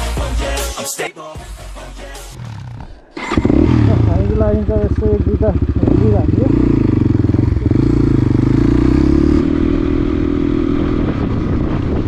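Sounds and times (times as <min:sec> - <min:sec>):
motorcycle engine running: 0:02.4 - 0:12.0.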